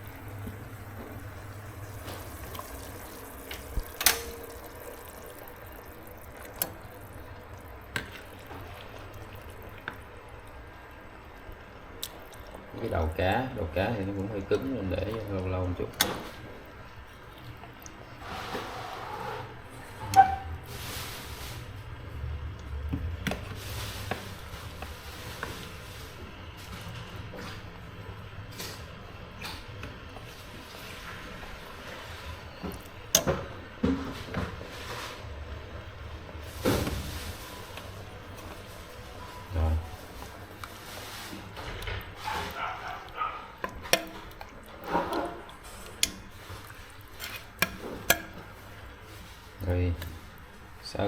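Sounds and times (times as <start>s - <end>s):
liquid sloshing and splashing: 0.0s - 27.9s, 28.5s - 51.0s
utensil clinking on pot: 42.2s - 48.7s.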